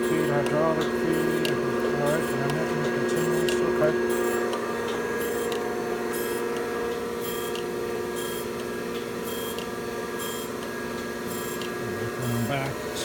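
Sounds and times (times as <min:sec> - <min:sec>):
grinder motor hum: 0:00.0 - 0:13.0.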